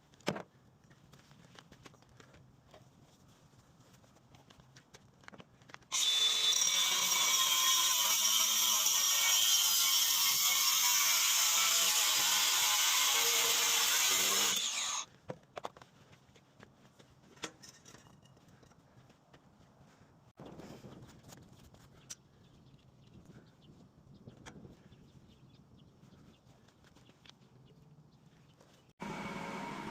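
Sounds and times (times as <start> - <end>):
power tool whining: 5.9 - 15.1, 29.0 - 29.9.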